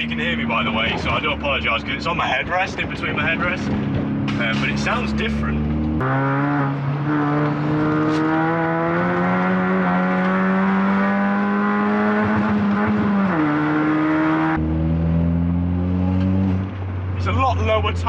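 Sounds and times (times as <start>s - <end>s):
exhaust blowing at joints: 0.0s - 10.6s
car engine accelerating: 0.0s - 18.0s.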